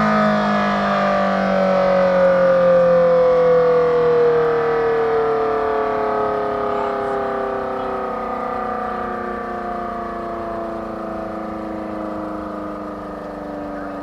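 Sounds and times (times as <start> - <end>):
warning siren winding down: 0.0 - 14.0.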